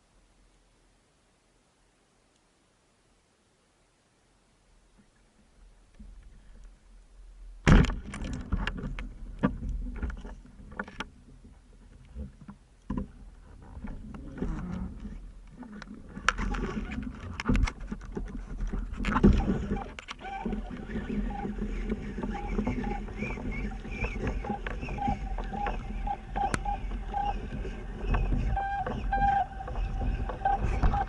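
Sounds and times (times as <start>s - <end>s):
underwater clicks and knocks: 7.7s - 31.0s.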